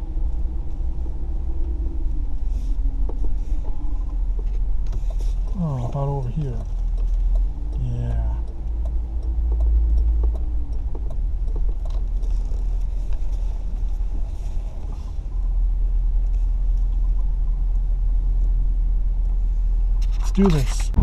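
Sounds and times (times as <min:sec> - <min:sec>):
car engine and road rumble: 0:00.0 - 0:21.0.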